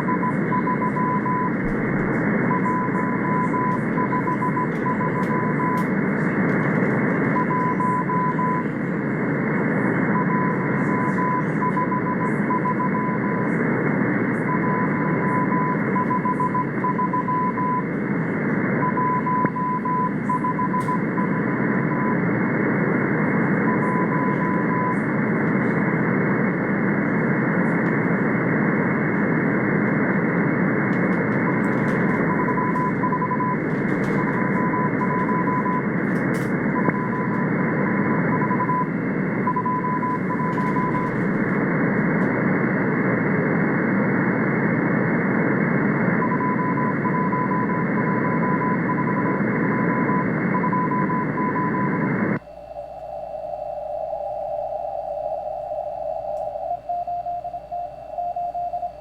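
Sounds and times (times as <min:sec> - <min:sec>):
morse code beeping tone: 0:00.0 - 0:05.9, 0:07.3 - 0:08.7, 0:10.1 - 0:13.5, 0:14.4 - 0:17.9, 0:18.8 - 0:22.2, 0:23.6 - 0:25.1, 0:30.9 - 0:41.6, 0:46.2 - 0:59.0
shortwave radio static: 0:00.0 - 0:59.0.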